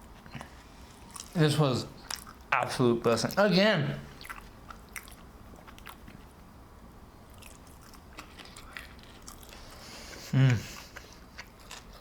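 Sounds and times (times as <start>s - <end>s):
chewing and mouth sounds: 0.2s - 1.4s, 2.0s - 2.5s, 4.1s - 6.4s, 7.3s - 12.0s.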